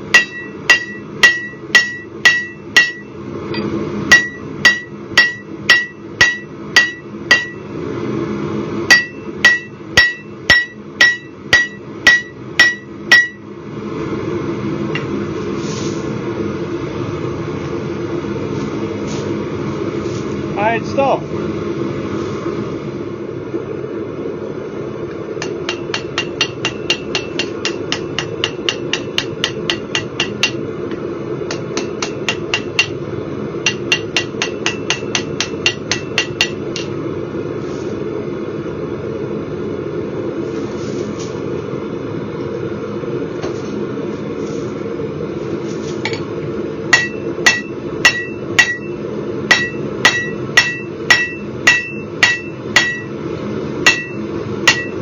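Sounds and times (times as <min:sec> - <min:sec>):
steady hum: 0:00.0 - 0:55.0
hammer striking steel on anvil: 0:00.1 - 0:07.7, 0:08.9 - 0:13.5, 0:25.4 - 0:33.0, 0:33.6 - 0:37.0, 0:46.9 - 0:53.2, 0:53.8 - 0:55.0.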